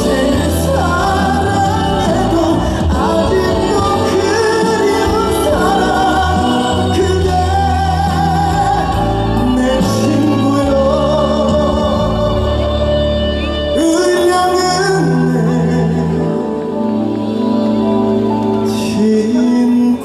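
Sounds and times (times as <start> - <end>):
live band music with singing: 0.0 - 20.0.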